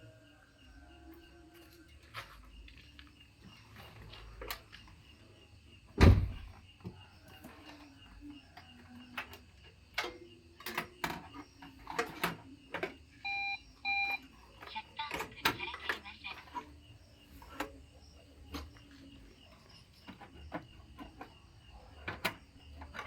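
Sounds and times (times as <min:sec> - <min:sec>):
loud thump: 0:06.0 - 0:06.5
tools and parts clicking: 0:07.4 - 0:13.0.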